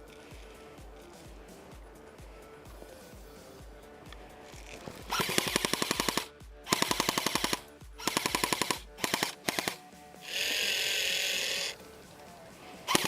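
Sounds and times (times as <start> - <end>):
airsoft gun firing bursts: 4.5 - 11.8, 12.8 - 13.0.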